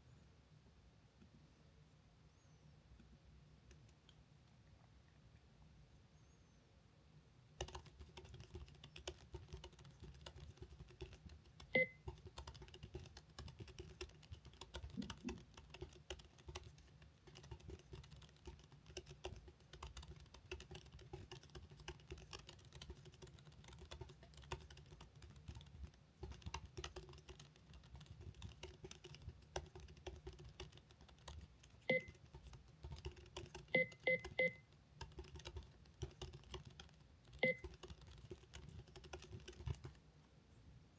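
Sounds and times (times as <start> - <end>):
fast typing on keyboard: 7.6 - 40.0.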